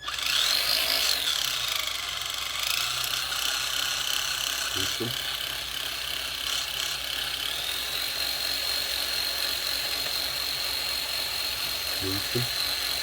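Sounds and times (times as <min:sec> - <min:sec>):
electric motor gear whine: 0:00.0 - 0:08.0, 0:11.8 - 0:13.0.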